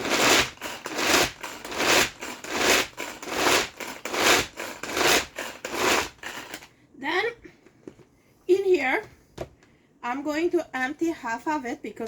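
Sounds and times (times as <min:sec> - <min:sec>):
pull-cord chopper whirring rasp: 0:00.0 - 0:06.7.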